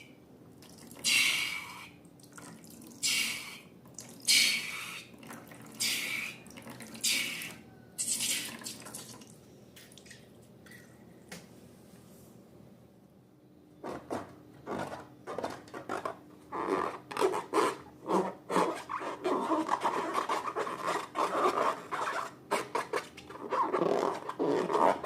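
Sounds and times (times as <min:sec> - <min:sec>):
slime scraping and rubbing: 0:14.7 - 0:25.0.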